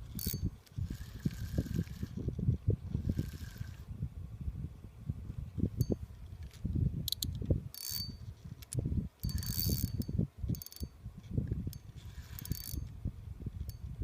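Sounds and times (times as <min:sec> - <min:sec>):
fishing reel whirring and clicking: 0:00.1 - 0:02.2, 0:03.0 - 0:03.9, 0:07.1 - 0:10.9, 0:11.7 - 0:12.9.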